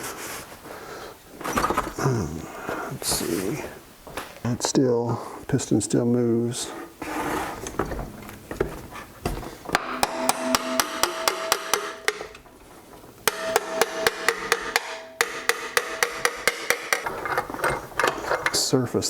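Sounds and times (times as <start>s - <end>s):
hammer tapping on metal: 8.2s - 12.5s, 13.2s - 17.1s.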